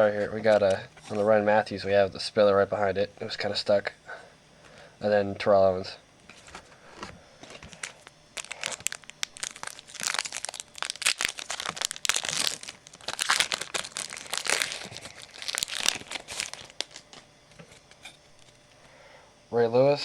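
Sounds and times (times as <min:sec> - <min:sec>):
foil wrapper tearing and crinkling: 0:06.4 - 0:17.2.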